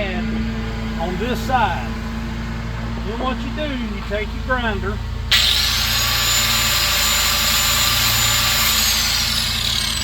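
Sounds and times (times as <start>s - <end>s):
angle grinder whining: 5.3s - 10.0s.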